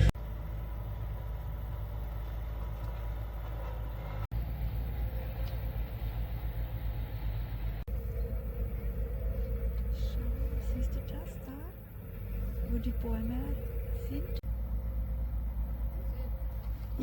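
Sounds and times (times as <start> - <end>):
car engine and road noise: 0.0 - 17.0.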